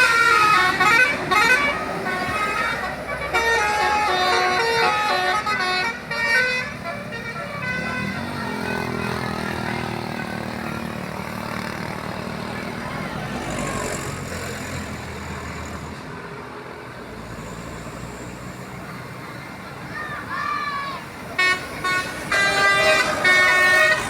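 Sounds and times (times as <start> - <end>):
bus musical horn playing notes: 0.0 - 10.4, 21.1 - 24.0
bus engine rumbling: 0.0 - 24.0.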